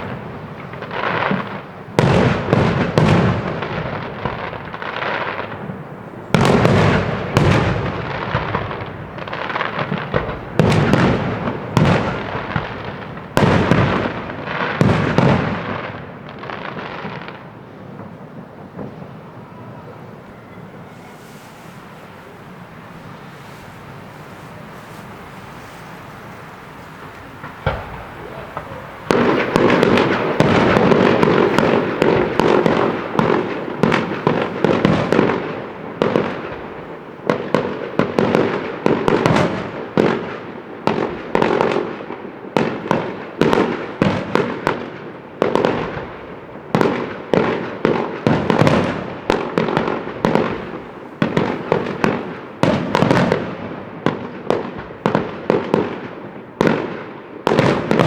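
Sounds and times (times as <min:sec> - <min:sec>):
fireworks bangs and crackling: 0:00.0 - 0:58.0.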